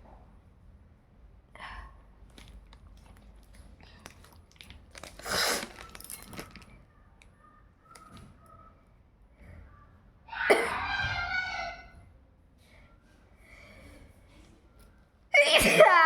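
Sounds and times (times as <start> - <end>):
small clicks and rustles: 2.2 - 8.6.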